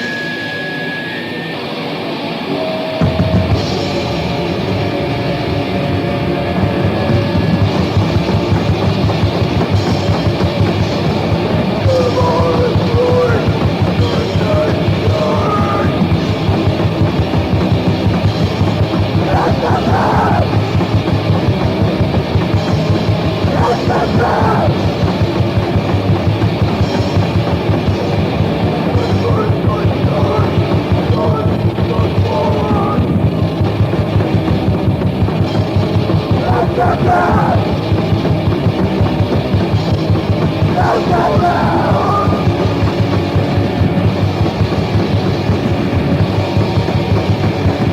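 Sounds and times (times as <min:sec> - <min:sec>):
fast distorted punk band: 0:00.0 - 0:47.9
pounding drum kit: 0:02.9 - 0:47.9
shouted vocals: 0:11.8 - 0:16.1, 0:19.1 - 0:20.8, 0:23.4 - 0:25.0, 0:28.8 - 0:33.2, 0:36.3 - 0:37.8, 0:40.6 - 0:42.7.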